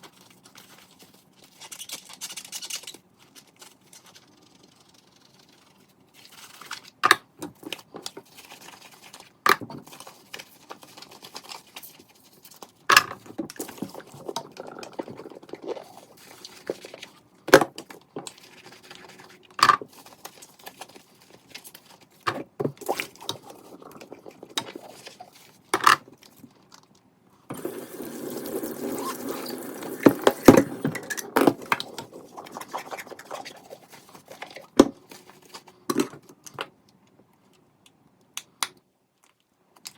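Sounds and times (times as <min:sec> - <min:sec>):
tap water running: 0:27.5 - 0:34.6.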